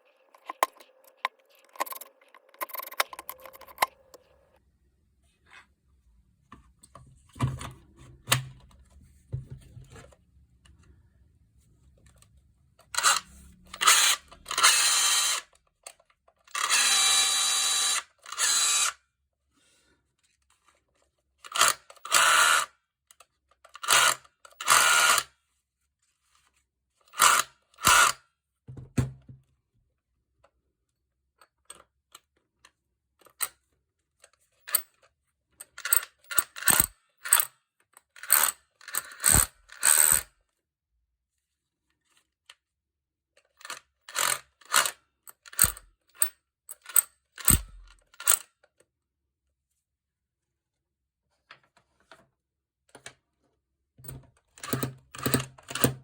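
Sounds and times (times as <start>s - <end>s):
hammer drill bursts: 16.7s - 18.9s.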